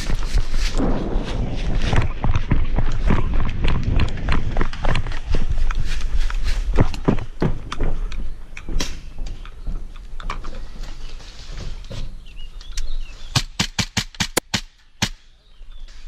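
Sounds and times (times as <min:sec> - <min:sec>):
footsteps and knocks: 0:01.6 - 0:12.6.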